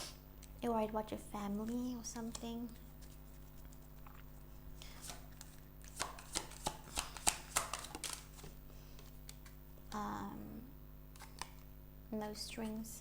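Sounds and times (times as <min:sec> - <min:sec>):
cards being shuffled: 0:01.7 - 0:09.6, 0:11.1 - 0:11.7.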